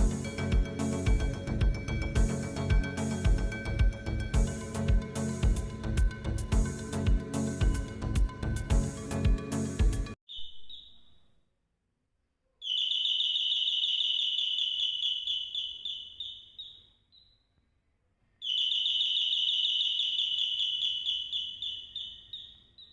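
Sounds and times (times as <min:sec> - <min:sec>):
electronic doorbell chirps: 0:12.6 - 0:16.4, 0:18.4 - 0:22.5.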